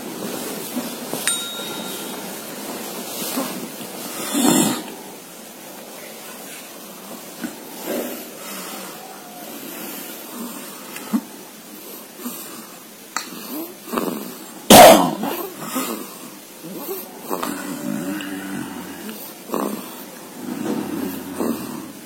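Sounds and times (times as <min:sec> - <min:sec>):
baby snoring and grunting: 0:03.2 - 0:05.0, 0:12.2 - 0:22.0
baby coughing: 0:14.7 - 0:15.6.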